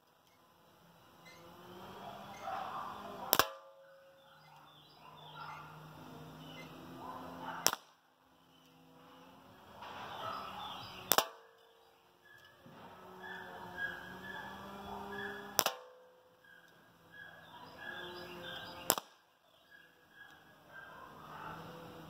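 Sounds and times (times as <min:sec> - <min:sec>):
pellet pistol shots: 0:03.3 - 0:03.7, 0:07.6 - 0:08.0, 0:11.0 - 0:11.5, 0:15.5 - 0:16.0, 0:18.8 - 0:19.2.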